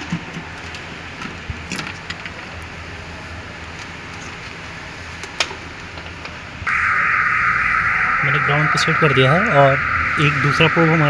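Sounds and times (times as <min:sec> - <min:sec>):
low steady hum: 0:06.7 - 0:11.0.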